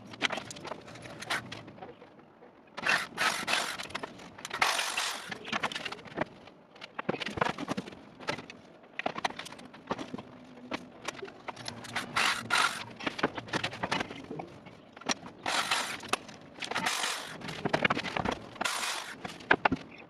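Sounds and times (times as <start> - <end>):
short scraping bursts: 2.8 - 3.9, 4.6 - 5.5, 11.8 - 12.9, 15.4 - 16.1, 16.7 - 17.6, 18.6 - 19.4.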